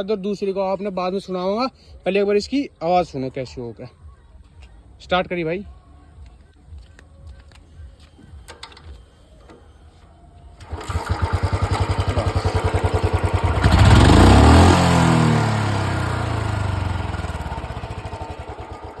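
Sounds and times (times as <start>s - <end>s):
motorcycle engine exhaust beats: 10.6s - 19.0s.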